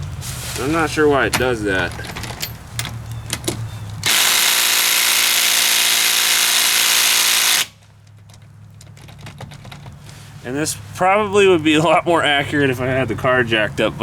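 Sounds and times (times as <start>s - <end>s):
impact wrench hammering: 3.4s - 7.7s.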